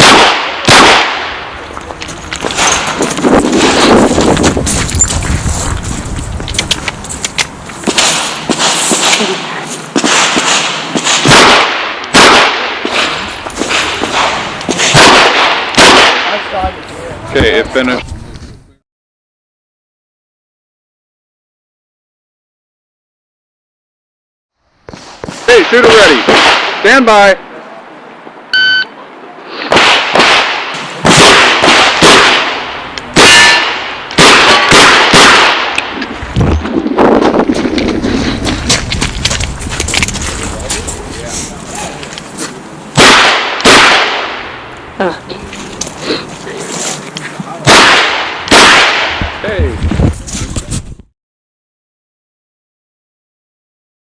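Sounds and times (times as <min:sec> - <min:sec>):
shot timer beep: 0:28.5 - 0:28.9.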